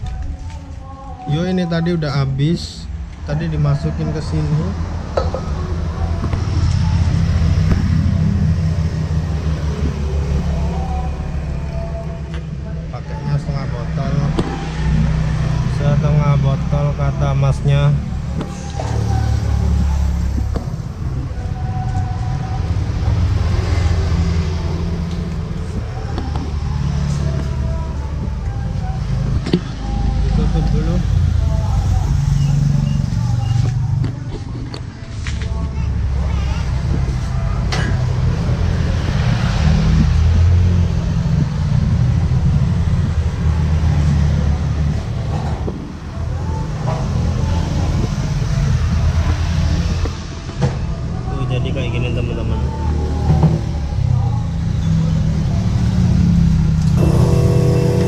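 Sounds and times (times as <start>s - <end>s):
motor vehicle rumble: 2.4s - 51.4s, 52.5s - 58.0s
motor droning: 57.0s - 58.0s.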